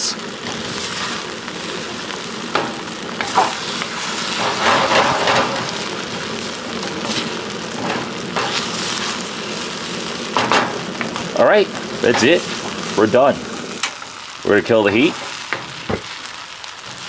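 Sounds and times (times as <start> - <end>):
rice sizzling in a wok: 0.0 - 17.0
spatula scraping and clinking wok: 2.4 - 11.2.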